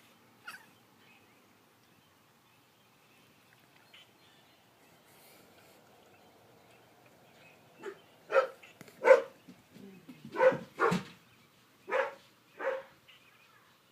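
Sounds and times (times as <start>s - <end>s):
cat chirping: 0.4s - 0.8s.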